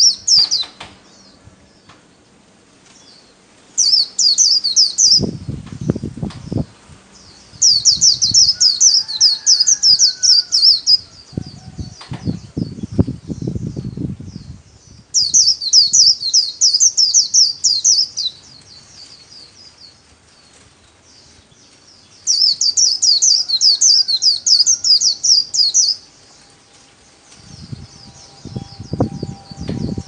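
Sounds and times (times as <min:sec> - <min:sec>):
soft bird chirps: 0:02.9 - 0:30.0
bird singing rapid high notes: 0:27.4 - 0:30.0.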